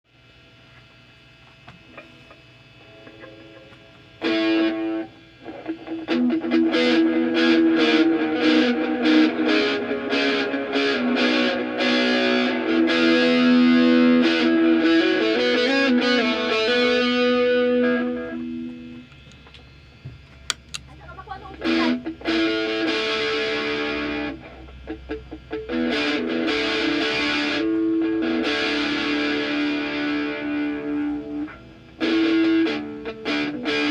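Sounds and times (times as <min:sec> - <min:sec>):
distorted electric guitar chords: 0:00.2 - 0:33.9.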